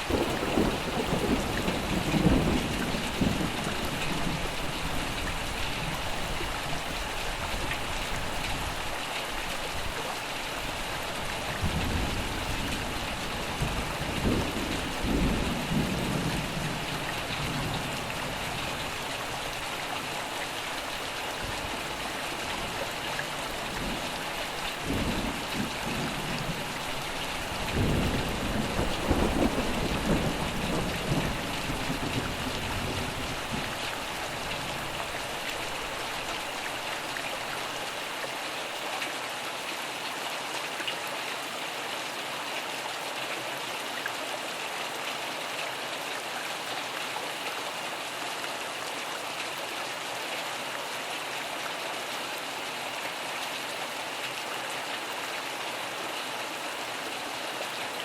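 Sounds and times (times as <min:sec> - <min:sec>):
heavy rain: 0:00.0 - 0:58.0
rolling thunder rumbles: 0:00.1 - 0:04.5, 0:24.8 - 0:33.9.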